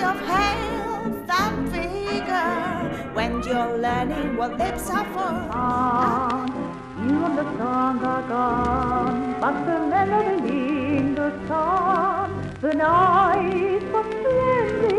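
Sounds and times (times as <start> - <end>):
instrumental accompaniment: 0.0 - 14.9
person singing with vibrato: 0.0 - 14.9.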